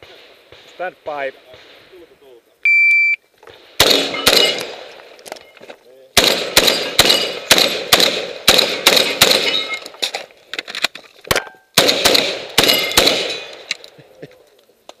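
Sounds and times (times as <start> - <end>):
shotgun shots echoing: 3.5 - 5.1, 6.2 - 9.9, 11.3 - 13.8.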